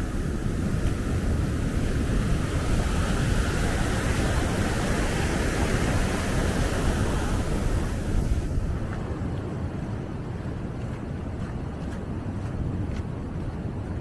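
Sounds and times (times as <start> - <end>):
water pouring through dam: 0.0 - 9.2
wind buffeting microphone: 0.0 - 14.0.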